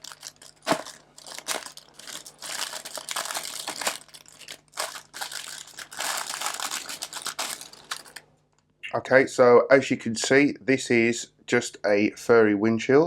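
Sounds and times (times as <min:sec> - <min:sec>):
packaging crinkling and tearing: 0:00.0 - 0:08.3.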